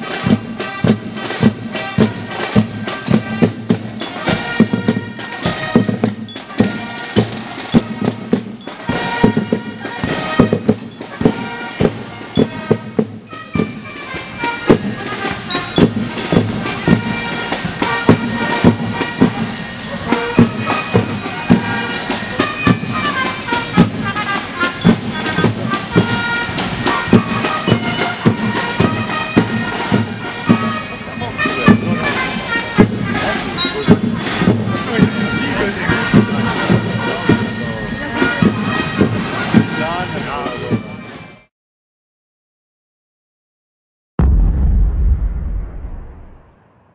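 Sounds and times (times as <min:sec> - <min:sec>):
steady drumbeat: 0:00.0 - 0:41.1, 0:44.2 - 0:46.4
marching band brass: 0:00.0 - 0:41.5.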